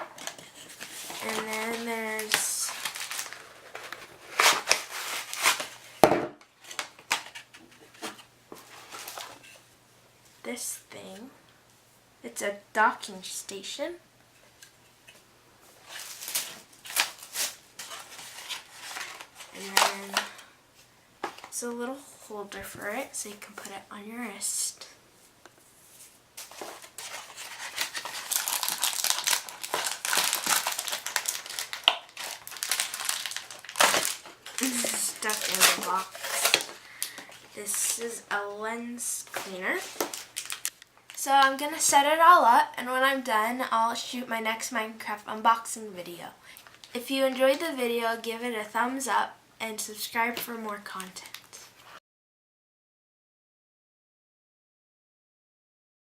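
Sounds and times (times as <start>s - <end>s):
packaging crinkling: 0.2s - 6.0s, 15.8s - 20.5s, 26.4s - 38.3s, 39.2s - 41.2s.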